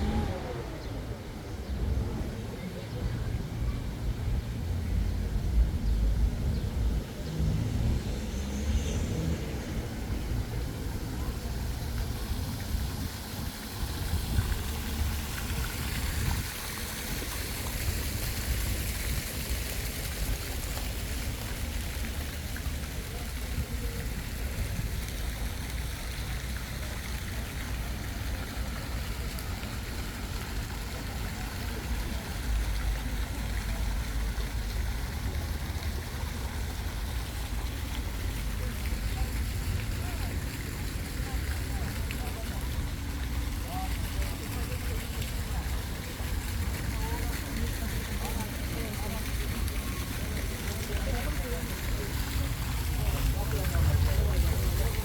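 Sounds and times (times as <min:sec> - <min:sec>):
low street rumble: 0:00.0 - 0:55.0.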